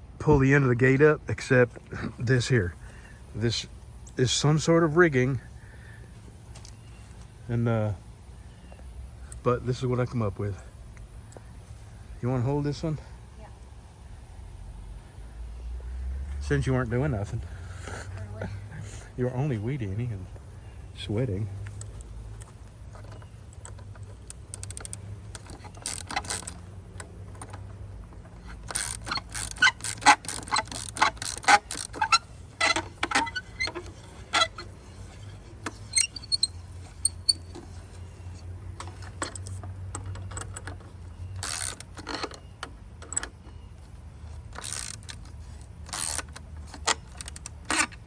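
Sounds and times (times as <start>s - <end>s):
metal tools clicking and clinking: 23.0s - 27.6s, 28.2s - 38.0s, 38.8s - 43.3s, 44.5s - 48.0s.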